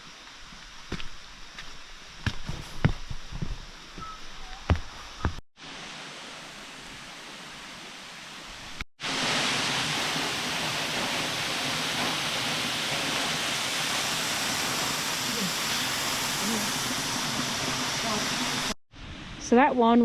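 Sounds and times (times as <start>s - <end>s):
waterfall rushing: 5.6s - 18.8s.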